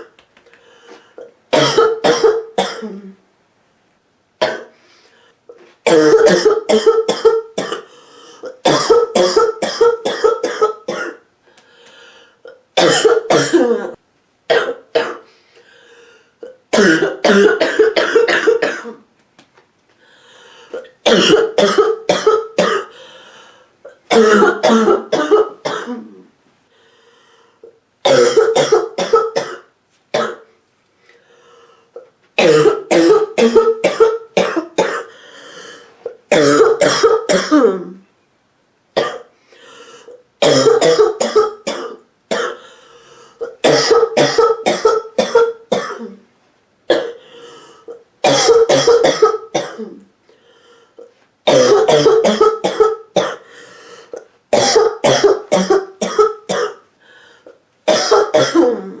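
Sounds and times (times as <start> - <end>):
woman coughing: 1.5 - 3.2, 4.4 - 4.7, 5.9 - 11.2, 12.8 - 15.2, 16.7 - 19.0, 20.8 - 22.9, 24.1 - 26.2, 28.1 - 30.4, 32.4 - 35.1, 36.3 - 38.0, 39.0 - 39.3, 40.4 - 42.6, 43.4 - 46.2, 46.9 - 47.2, 48.2 - 50.0, 51.5 - 53.4, 54.2 - 56.8, 57.9 - 59.0.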